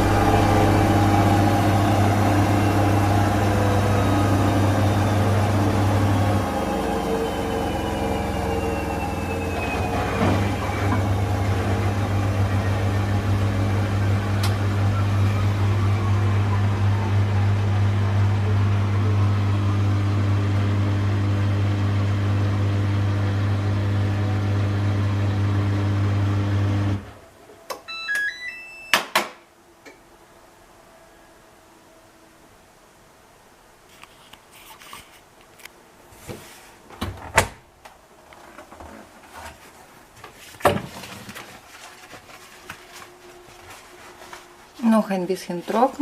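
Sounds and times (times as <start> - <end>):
faint falling whine: 0.0 - 23.1
washing machine humming: 0.0 - 29.0, 35.8 - 46.0.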